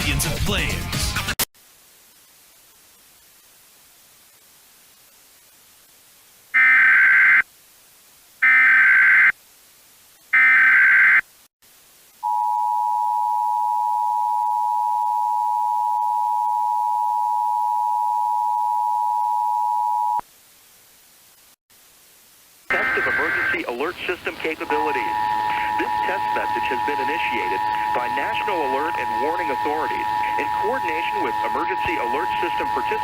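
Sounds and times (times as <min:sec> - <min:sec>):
data bursts: 0:22.7 - 0:33.0
two-tone attention signal: 0:22.7 - 0:33.0.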